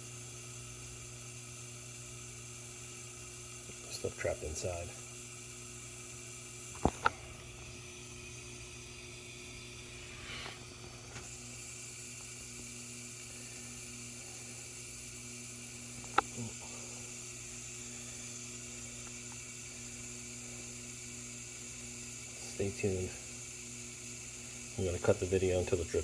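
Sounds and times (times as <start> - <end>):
pump hum: 0.0 - 26.0.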